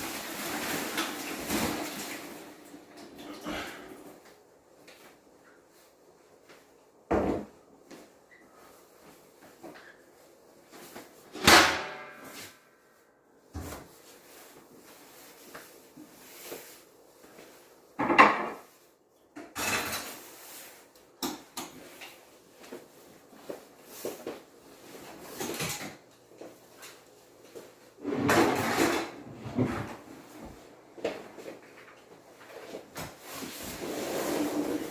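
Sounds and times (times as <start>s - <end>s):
scraping or rustling bursts: 33.2s - 34.9s.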